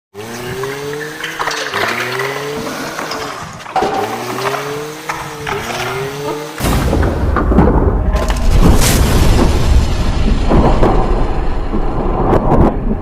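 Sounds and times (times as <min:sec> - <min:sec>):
race car engine revving: 0:00.2 - 0:08.6
loud crash: 0:06.6 - 0:12.9.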